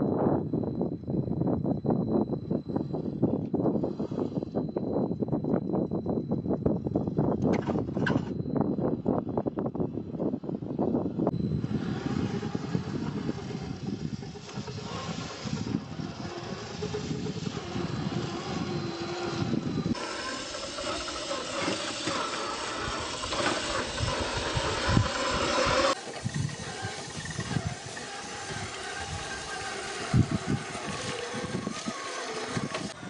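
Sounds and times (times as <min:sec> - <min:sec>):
wheels on the ground: 0:00.0 - 0:33.0
toy car motor whining: 0:02.8 - 0:04.8, 0:11.4 - 0:33.0.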